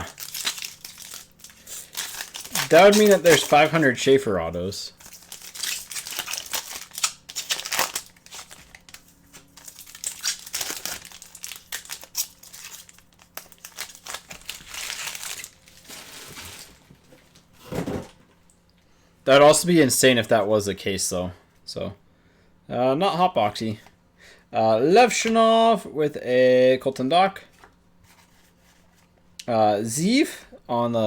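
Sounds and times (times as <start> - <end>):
wrappers crinkling and rustling: 0.0 - 4.2, 4.9 - 17.5.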